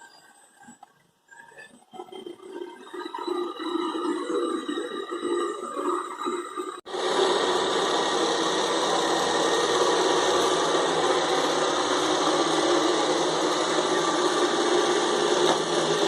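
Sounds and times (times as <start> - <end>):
robot vacuum running: 6.9 - 16.0.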